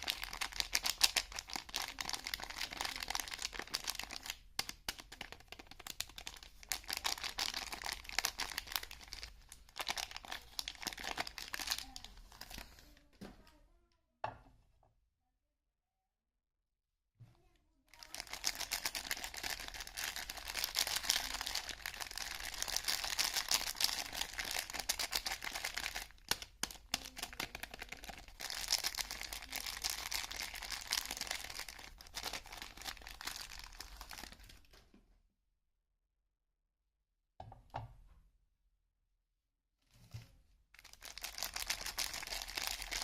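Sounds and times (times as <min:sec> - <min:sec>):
soap wrapping crinkling: 0:00.0 - 0:13.0, 0:18.0 - 0:34.8, 0:40.8 - 0:43.0.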